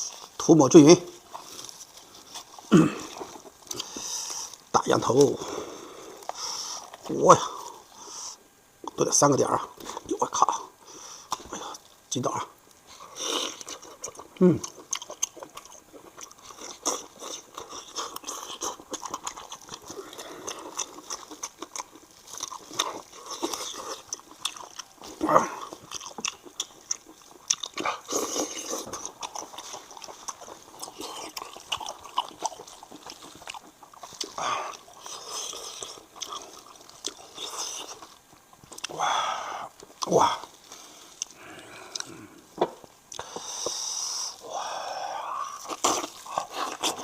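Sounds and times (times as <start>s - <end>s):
wet chewing mouth noises: 12.8s - 44.5s, 45.3s - 47.0s.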